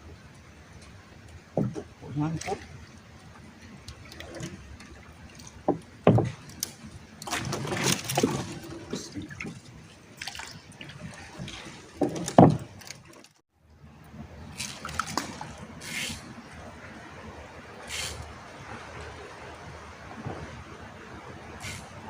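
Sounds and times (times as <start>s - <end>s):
water splashing and sloshing: 0.0s - 22.0s
knocks and thumps: 1.5s - 1.9s, 5.6s - 6.5s, 12.0s - 12.8s.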